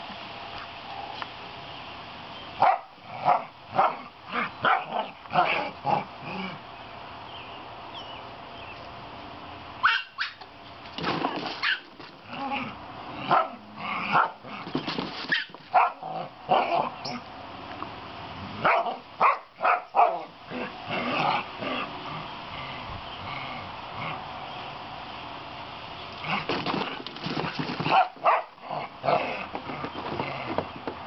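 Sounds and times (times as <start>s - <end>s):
dogs barking and yipping: 2.6s - 5.8s, 9.8s - 10.4s, 11.4s - 12.0s, 13.2s - 17.2s, 18.6s - 21.9s, 27.8s - 30.2s.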